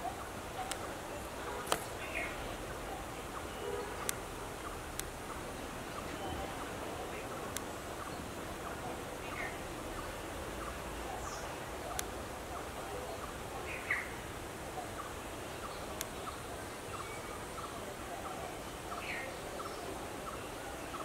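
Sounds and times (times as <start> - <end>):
faint regular ticking call: 0.0 - 21.0
steady background hiss: 0.0 - 21.0
sharp clicks: 4.9 - 5.2.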